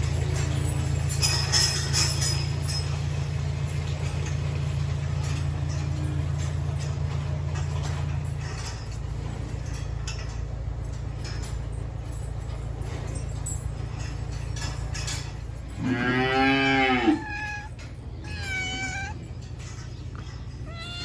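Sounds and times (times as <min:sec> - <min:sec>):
cow mooing: 0:15.7 - 0:19.4.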